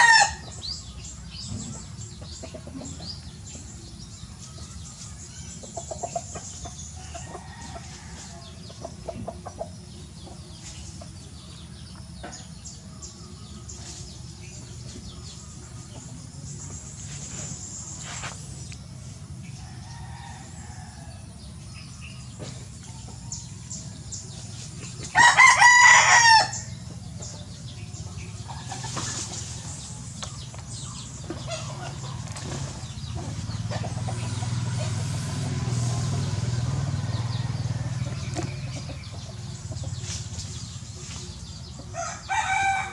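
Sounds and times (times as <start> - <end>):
rooster crowing: 0.0 - 0.5, 19.6 - 21.3, 25.1 - 26.7, 41.9 - 42.9
birds chirping: 0.0 - 42.9
chickens clucking: 0.0 - 42.9.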